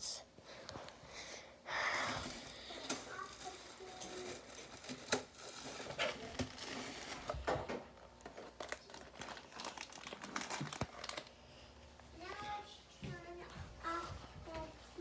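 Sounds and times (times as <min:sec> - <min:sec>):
plastic wrappers crinkling: 0:02.2 - 0:11.4.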